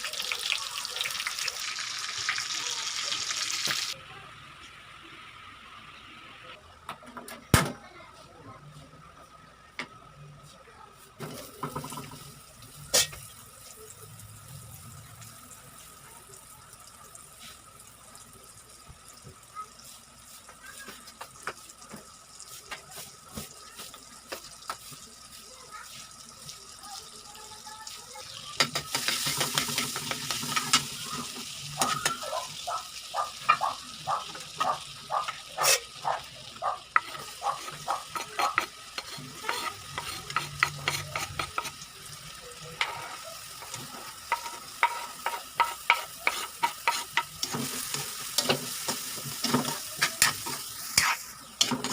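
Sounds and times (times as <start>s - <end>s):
food sizzling in a pan: 0.0s - 6.6s, 11.0s - 51.9s
utensil scraping a pan: 35.6s - 35.9s, 36.9s - 41.8s, 42.8s - 51.9s.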